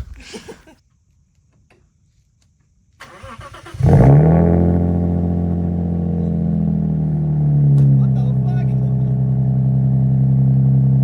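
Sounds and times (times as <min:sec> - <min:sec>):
car engine starting and idling: 0:03.0 - 0:11.0.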